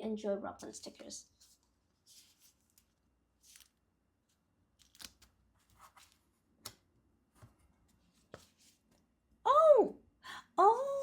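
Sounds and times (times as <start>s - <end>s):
paper rustling: 0.8s - 6.3s.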